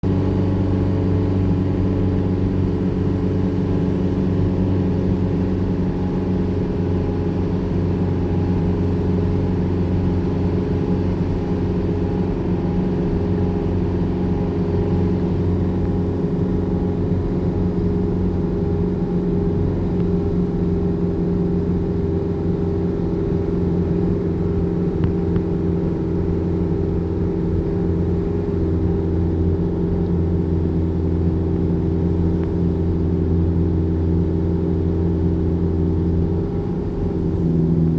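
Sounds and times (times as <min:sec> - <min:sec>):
engine running steadily: 0:00.0 - 0:37.9.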